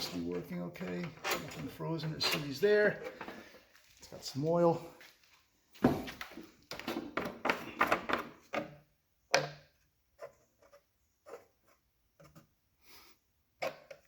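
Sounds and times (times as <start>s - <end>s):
knocks and clicks of mower parts: 0.0s - 3.5s, 5.8s - 9.8s.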